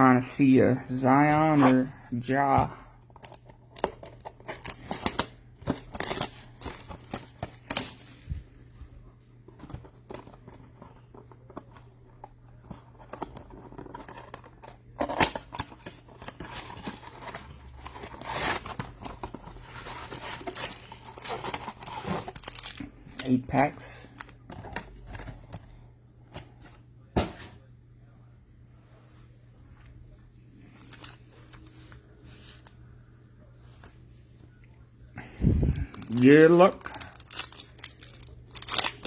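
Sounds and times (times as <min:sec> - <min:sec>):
plastic wrap and cardboard crinkling: 0:03.2 - 0:08.9, 0:15.1 - 0:23.8, 0:35.6 - 0:39.0.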